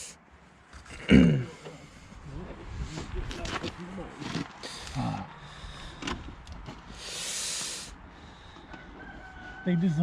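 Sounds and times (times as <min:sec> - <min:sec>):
person clearing throat: 0:00.9 - 0:01.6.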